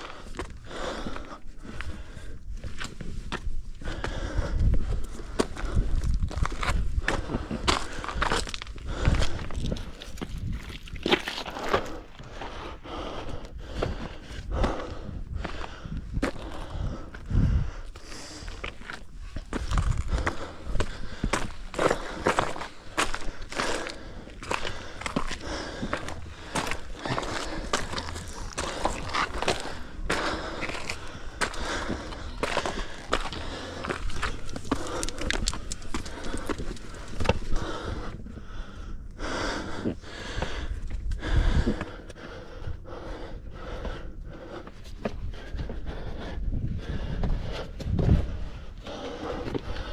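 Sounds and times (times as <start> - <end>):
footsteps on rocky trail: 0.0 - 49.9
stones shifting: 6.4 - 12.5, 18.7 - 37.5
boots crunching on gravel: 9.7 - 12.5, 21.3 - 37.4.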